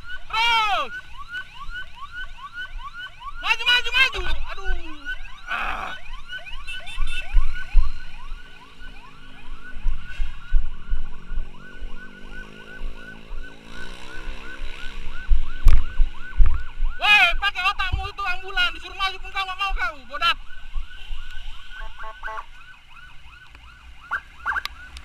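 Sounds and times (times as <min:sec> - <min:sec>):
ambulance siren yelping: 0:00.0 - 0:25.0
motorcycle engine revving: 0:06.7 - 0:16.0.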